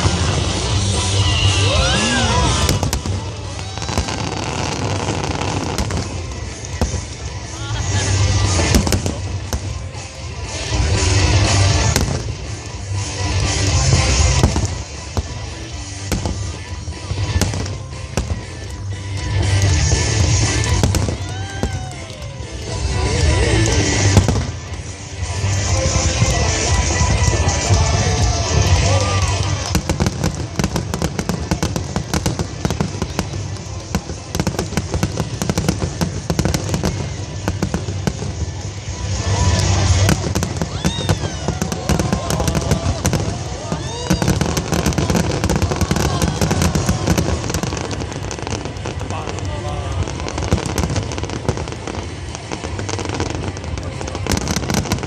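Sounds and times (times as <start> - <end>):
fireworks bangs: 0.0 - 55.0
fireworks rumble and crackle: 0.0 - 55.0
music playing: 0.0 - 55.0.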